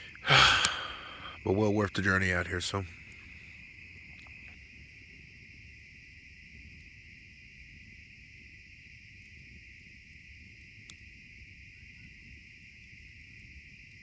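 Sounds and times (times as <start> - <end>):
faint ticks: 0.0 - 1.4, 2.7 - 5.3, 10.5 - 11.1
insects buzzing: 0.0 - 14.0.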